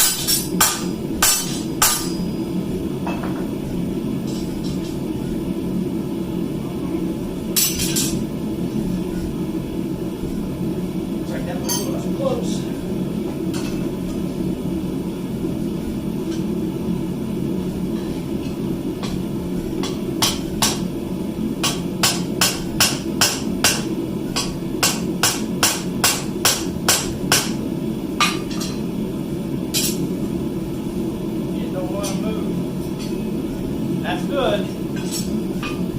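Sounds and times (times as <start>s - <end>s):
hammer striking steel on anvil: 0.0s - 2.3s, 19.8s - 20.9s, 21.6s - 27.6s.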